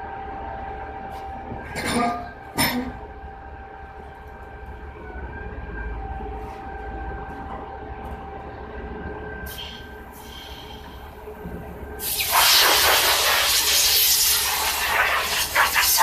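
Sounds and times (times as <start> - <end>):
air hissing: 12.0 - 16.0.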